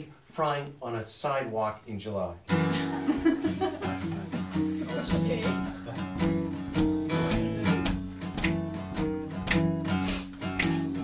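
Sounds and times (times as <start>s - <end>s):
acoustic guitar strumming: 2.5s - 11.0s.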